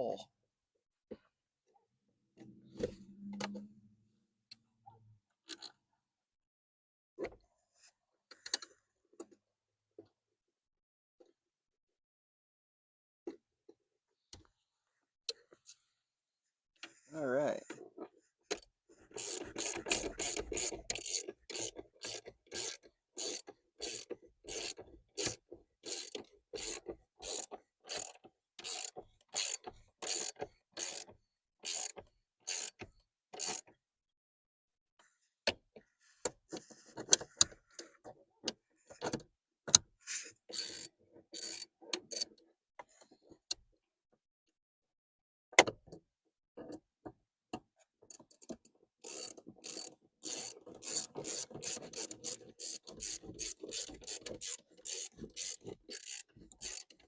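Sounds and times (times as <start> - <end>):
ratchet wrench clicking: 19.1 - 32.8, 33.4 - 33.6, 40.5 - 42.3, 49.0 - 57.0.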